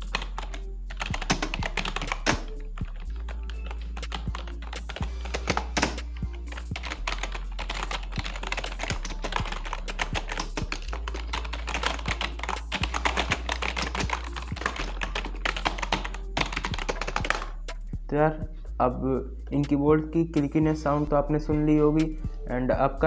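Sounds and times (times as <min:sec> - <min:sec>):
fast keyboard typing: 0:00.0 - 0:17.7
background music: 0:00.0 - 0:23.0.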